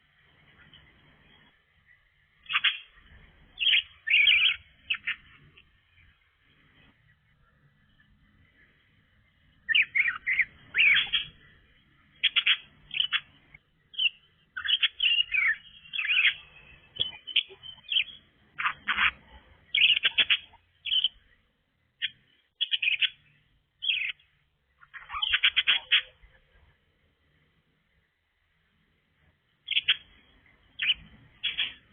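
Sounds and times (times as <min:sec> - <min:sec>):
budgerigar chattering: 0:02.4 - 0:02.9, 0:03.6 - 0:05.2, 0:09.7 - 0:11.4, 0:12.2 - 0:13.3, 0:14.0 - 0:21.2, 0:22.0 - 0:23.2, 0:24.8 - 0:26.2, 0:29.7 - 0:30.1, 0:30.8 - 0:31.9.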